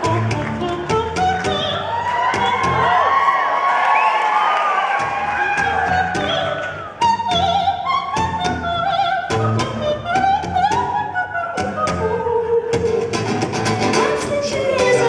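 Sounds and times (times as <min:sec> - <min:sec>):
woman singing operatic vocals: 0:05.9 - 0:13.1, 0:14.0 - 0:15.0.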